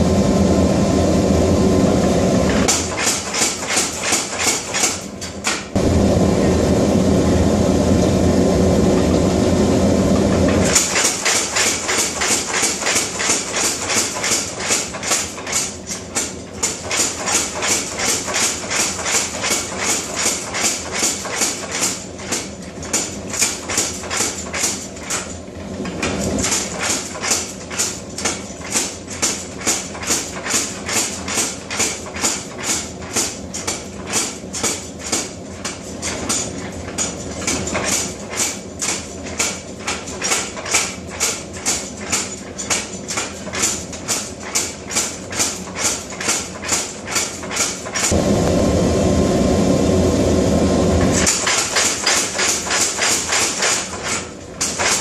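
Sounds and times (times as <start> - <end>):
loud steady roar: 0.0 - 2.7, 5.8 - 10.8, 48.1 - 51.3
power hammer striking steel: 2.5 - 6.0, 51.2 - 55.0.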